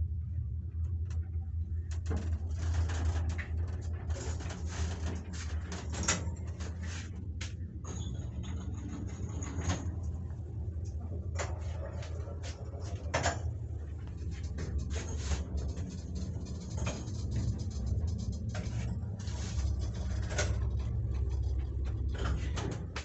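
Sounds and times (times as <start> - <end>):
lift car humming: 0.8 - 23.0
scraping knocks and clicks: 11.4 - 23.0.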